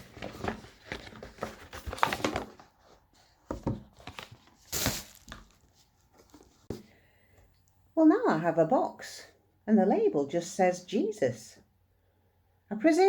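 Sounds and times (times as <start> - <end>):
wrapping paper tearing and crumpling: 4.1 - 5.5.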